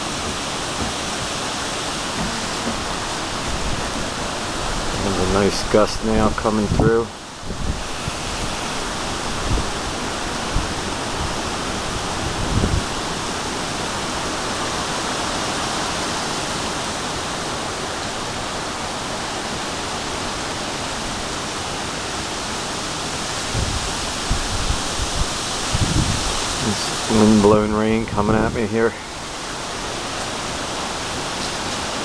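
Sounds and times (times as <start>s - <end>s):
storm wind rushing: 0.0s - 16.7s, 22.9s - 27.6s
wind buffeting microphone: 0.0s - 16.8s, 18.6s - 32.0s.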